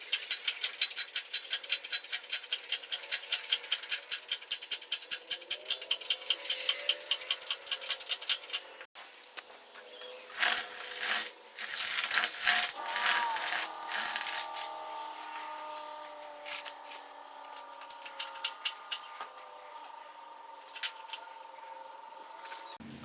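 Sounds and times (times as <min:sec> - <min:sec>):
metal parts clanking and scraping: 0:00.0 - 0:08.8, 0:10.2 - 0:20.0, 0:20.6 - 0:22.8.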